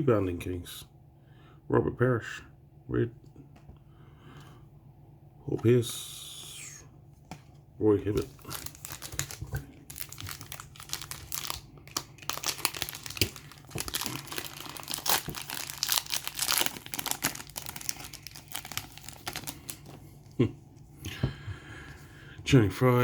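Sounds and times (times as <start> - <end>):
plastic wrapper crinkling: 8.1 - 20.4
wrapper tearing: 8.2 - 19.9.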